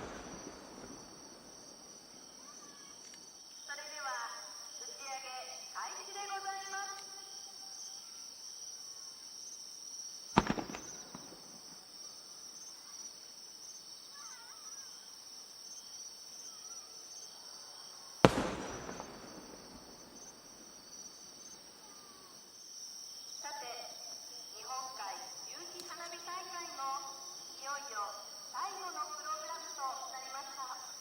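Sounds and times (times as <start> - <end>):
firework shells booming: 0.0 - 2.8, 10.4 - 12.0, 18.2 - 22.4
crickets chirring: 0.0 - 31.0.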